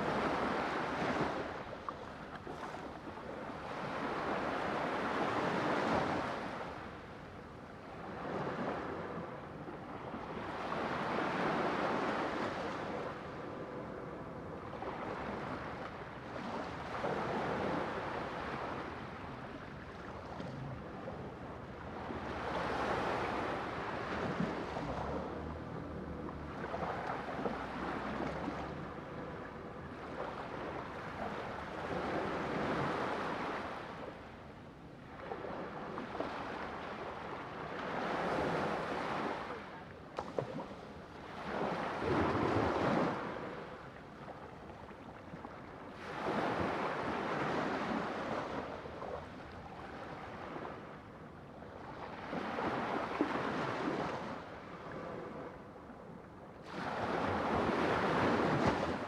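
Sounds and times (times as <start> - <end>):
sea waves breaking on shore: 35.0 - 51.0, 56.6 - 59.0.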